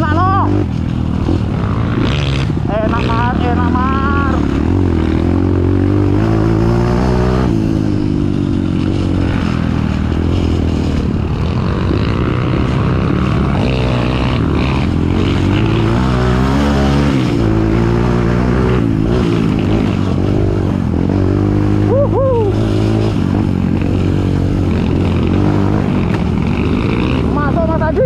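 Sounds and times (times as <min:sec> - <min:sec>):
trail bike engine revving: 0:00.0 - 0:28.0.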